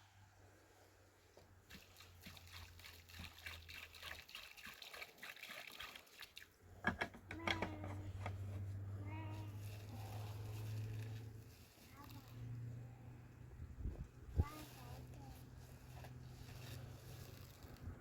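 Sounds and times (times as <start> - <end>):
water trickling and splashing: 1.3 - 6.8, 9.4 - 18.0.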